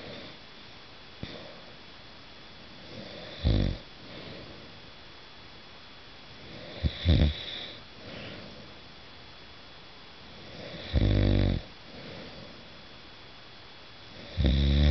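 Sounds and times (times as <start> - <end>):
man snoring: 2.9 - 3.8, 6.5 - 7.7, 10.4 - 11.7, 14.2 - 14.9
soft breathing: 4.0 - 4.9, 6.4 - 8.9, 11.8 - 12.9.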